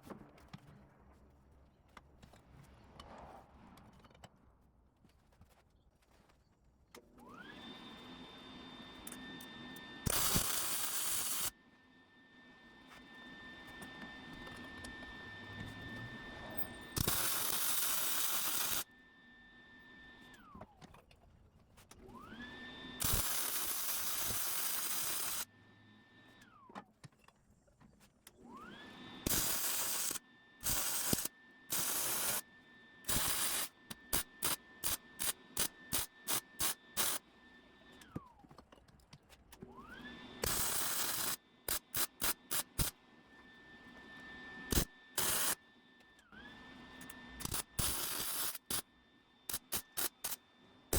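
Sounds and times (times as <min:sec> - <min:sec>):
electric welder arcing: 0:10.0 - 0:11.6, 0:16.9 - 0:18.9, 0:23.0 - 0:25.5, 0:29.2 - 0:32.4, 0:33.1 - 0:37.2, 0:40.4 - 0:43.0, 0:44.7 - 0:45.6, 0:47.4 - 0:48.9, 0:49.5 - 0:50.4.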